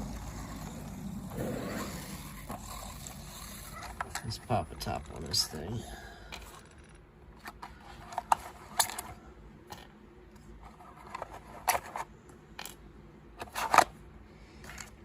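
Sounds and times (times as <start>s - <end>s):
handling noises: 0.0s - 15.0s.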